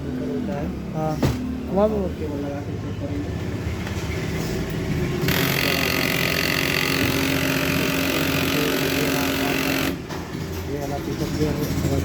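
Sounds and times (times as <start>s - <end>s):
printer motor and gears turning: 5.2s - 11.8s.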